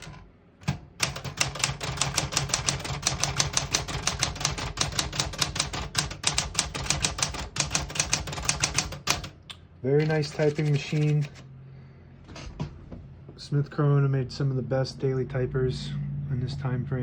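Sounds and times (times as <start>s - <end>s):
manual typewriter typing: 0.0s - 9.4s, 10.0s - 11.5s.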